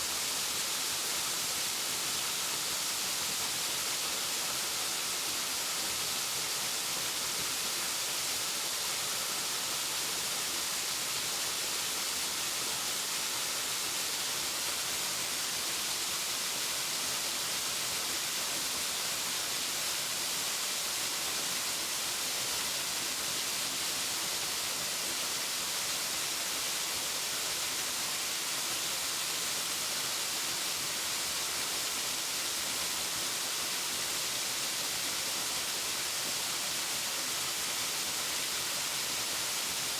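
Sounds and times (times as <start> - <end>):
waterfall hissing: 0.0 - 39.9.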